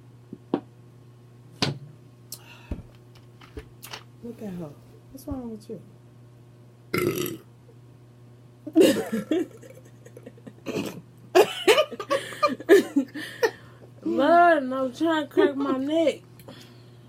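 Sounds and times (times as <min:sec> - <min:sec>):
person burping: 0:06.9 - 0:07.4, 0:10.6 - 0:11.0.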